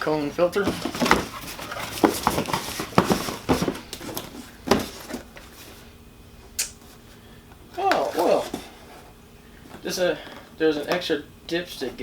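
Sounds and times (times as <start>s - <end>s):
plastic packaging rustling: 0.0s - 5.9s, 7.8s - 10.6s.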